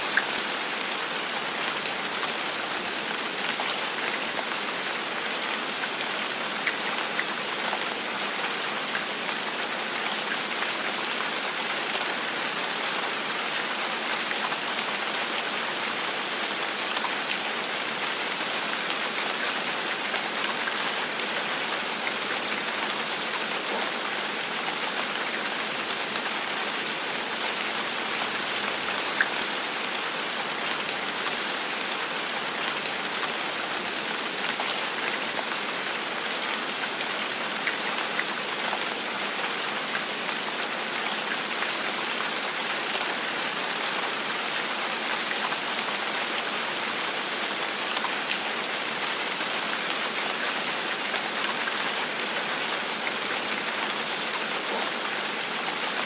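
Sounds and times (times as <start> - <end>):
steady gentle rain: 0.0 - 56.0.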